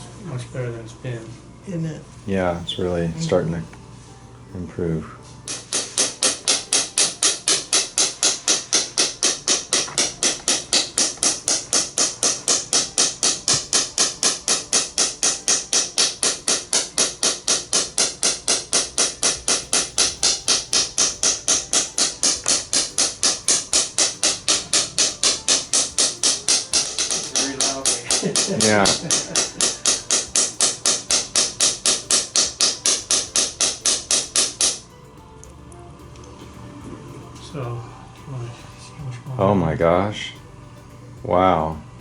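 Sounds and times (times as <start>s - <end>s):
therapy applicator clicking pulses: 5.5s - 36.5s.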